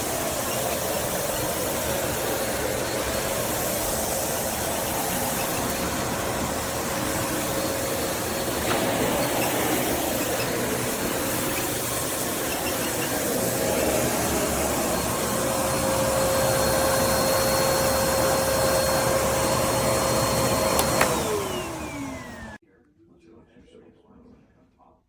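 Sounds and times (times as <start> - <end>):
vacuum cleaner motor whining: 0.0 - 22.6
vacuum switch click: 20.6 - 21.4.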